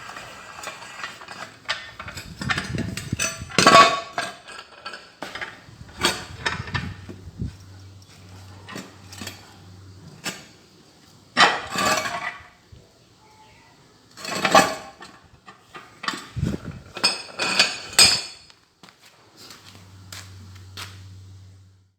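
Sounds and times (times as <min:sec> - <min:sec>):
steel parts clinking and scraping: 0:00.0 - 0:10.6, 0:11.3 - 0:12.5, 0:14.1 - 0:18.5
low steady hum: 0:19.5 - 0:21.9.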